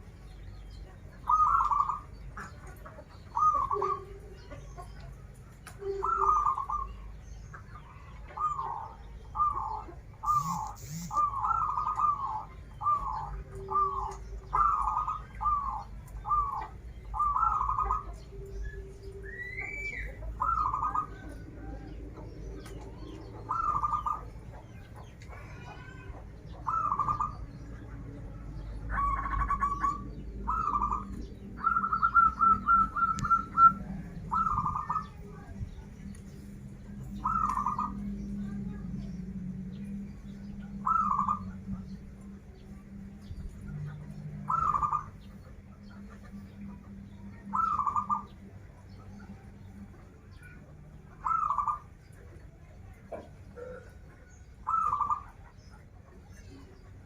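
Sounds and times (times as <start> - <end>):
dove cooing: 1.2 - 4.9, 5.6 - 7.1, 7.9 - 35.8, 36.8 - 39.0, 40.6 - 41.9, 43.8 - 45.3, 47.3 - 48.4, 51.2 - 51.9, 53.1 - 55.5.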